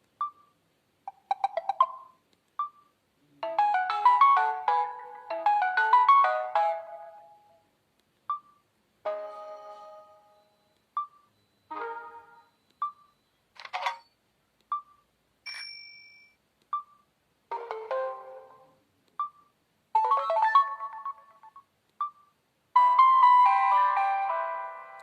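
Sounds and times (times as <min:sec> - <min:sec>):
phone alert tones: 0:08.3 - 0:13.2.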